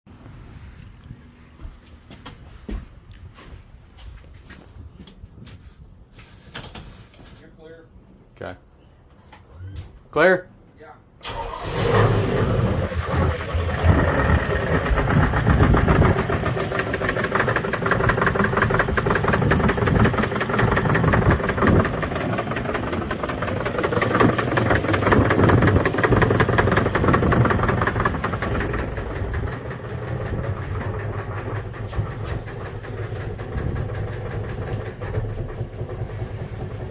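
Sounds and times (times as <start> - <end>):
engine running: 11.2 - 36.9
fast regular engine knock: 12.8 - 36.9.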